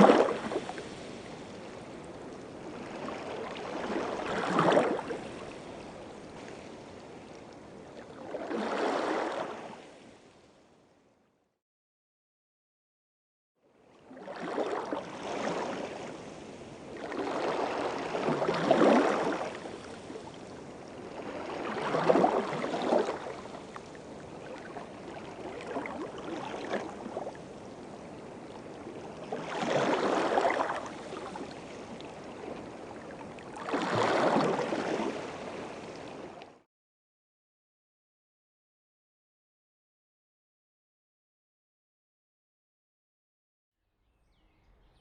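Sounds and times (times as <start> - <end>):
small waves washing in: 0.0 - 10.5, 13.9 - 36.6.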